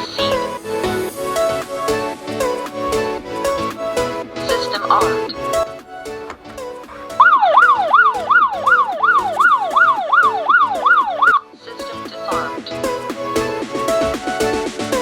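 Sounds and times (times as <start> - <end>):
background music: 0.0 - 15.0
electronic alarm siren wailing: 7.2 - 11.4.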